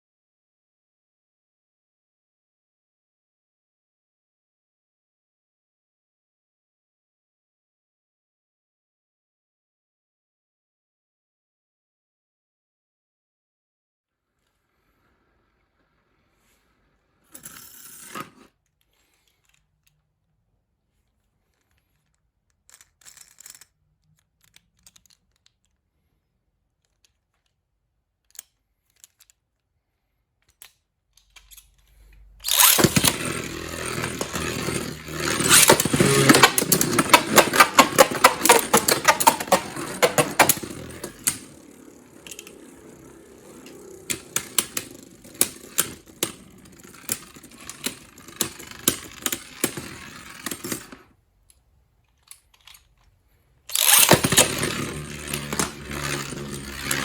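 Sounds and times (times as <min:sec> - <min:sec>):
spinning tops whirring and clashing: 0:17.4 - 0:18.5, 0:32.4 - 0:51.0, 0:53.7 - 0:57.0.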